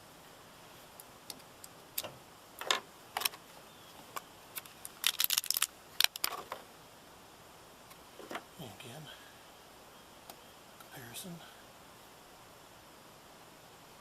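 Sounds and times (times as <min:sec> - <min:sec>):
small hard parts clicking and rattling: 0:04.6 - 0:06.6.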